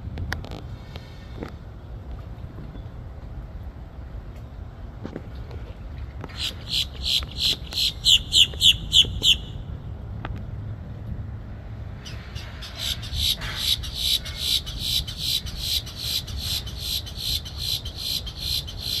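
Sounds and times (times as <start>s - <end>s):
crows calling: 12.4s - 19.0s.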